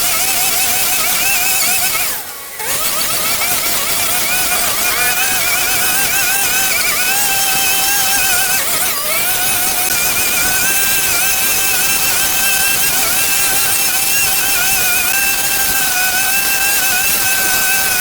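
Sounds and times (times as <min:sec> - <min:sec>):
garden tool engine whine: 0:00.0 - 0:18.0.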